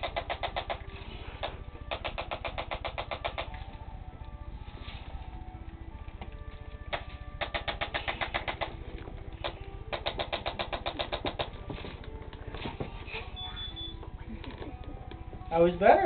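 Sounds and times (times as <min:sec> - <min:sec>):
adjusting instrument clicking: 0:06.2 - 0:11.6.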